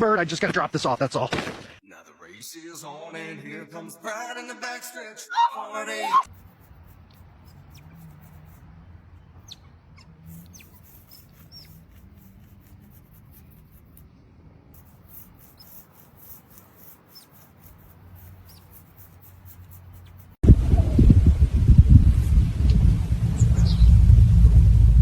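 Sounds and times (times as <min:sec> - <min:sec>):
small animal squeaking: 0:05.4 - 0:08.8, 0:09.4 - 0:12.7, 0:14.8 - 0:20.3
low steady hum: 0:20.5 - 0:25.0.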